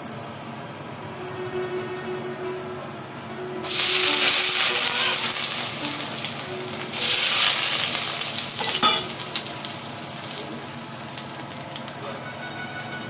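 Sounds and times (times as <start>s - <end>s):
food sizzling in hot oil: 3.7s - 12.0s.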